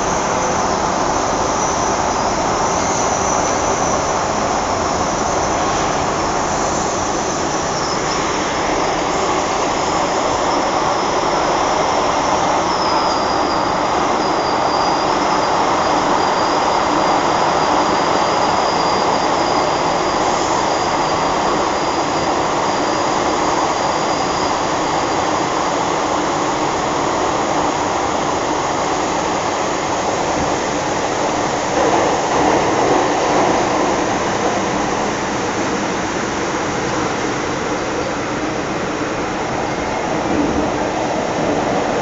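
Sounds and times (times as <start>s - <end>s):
thin high whine: 0.0s - 25.6s
train jolt: 0.0s - 42.0s
train wheels rumbling on rails: 0.0s - 42.0s.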